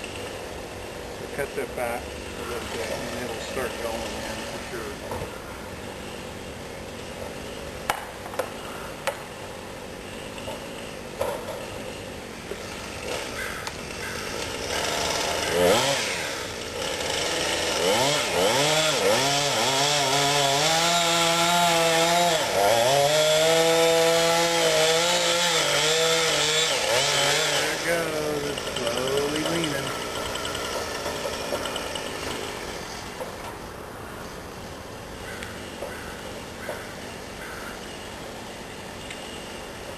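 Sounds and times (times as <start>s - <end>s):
chainsaw cutting wood: 0.0s - 33.6s, 35.3s - 39.9s.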